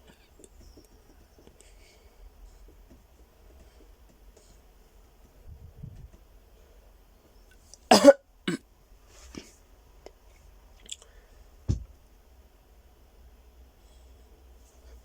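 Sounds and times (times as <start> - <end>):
person coughing: 7.9 - 8.6
low thump: 11.7 - 12.0.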